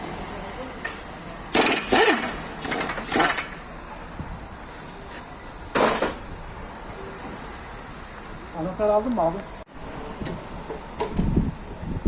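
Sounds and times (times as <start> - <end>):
power tool bursts: 1.5 - 3.6.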